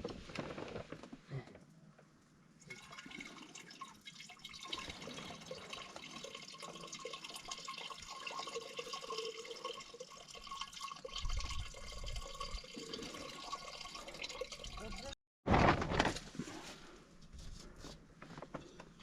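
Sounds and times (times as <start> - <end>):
liquid trickling and dripping: 2.6 - 15.2.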